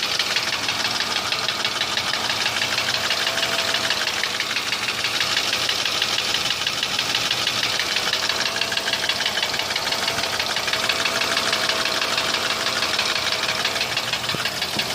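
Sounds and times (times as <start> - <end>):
car engine running: 0.0 - 14.9
fast ticking engine knock: 0.0 - 14.9.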